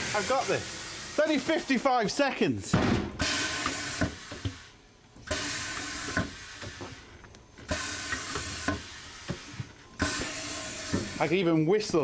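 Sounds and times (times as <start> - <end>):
compressed air hissing: 3.0 - 11.4.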